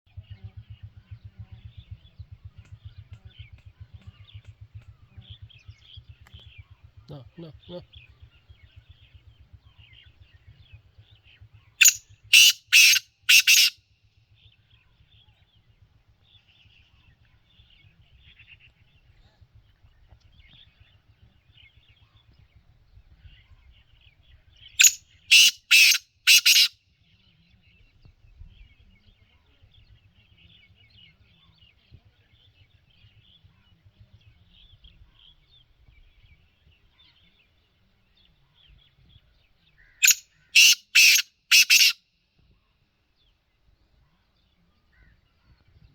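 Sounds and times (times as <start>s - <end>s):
small birds chirping: 0.1s - 13.8s, 14.5s - 45.9s
francolin harsh grating call: 11.8s - 13.8s, 24.8s - 26.7s, 40.0s - 42.0s.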